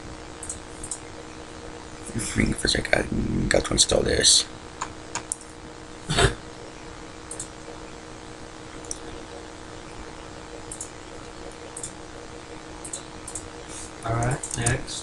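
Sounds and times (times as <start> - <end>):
steady hum: 0.0 - 15.0
computer mouse clicks: 0.4 - 1.0, 7.3 - 7.5, 10.7 - 10.9, 11.8 - 12.0, 12.8 - 13.5, 14.2 - 14.8.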